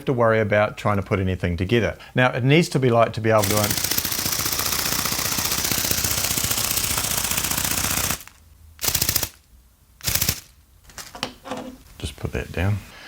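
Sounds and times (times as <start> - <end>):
toy wing-flapping mechanism clatter: 3.4 - 10.6.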